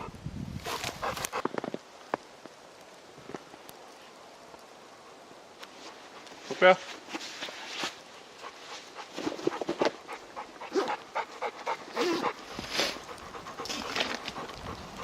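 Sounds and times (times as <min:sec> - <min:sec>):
dog panting: 0:00.7 - 0:01.5, 0:08.4 - 0:15.0.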